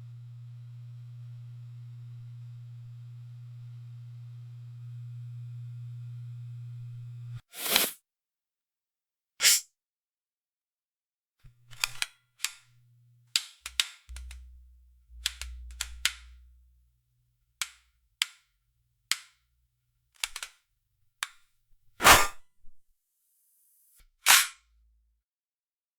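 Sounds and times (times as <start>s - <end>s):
faint low hum: 0.0s - 7.4s, 14.1s - 17.0s
paper tearing: 7.5s - 8.0s.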